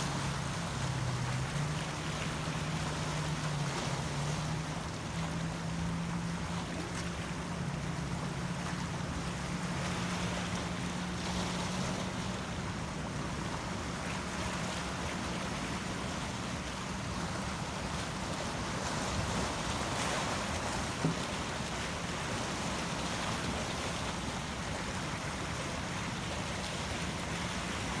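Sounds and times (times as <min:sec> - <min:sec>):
ocean waves surf: 0:00.0 - 0:28.0.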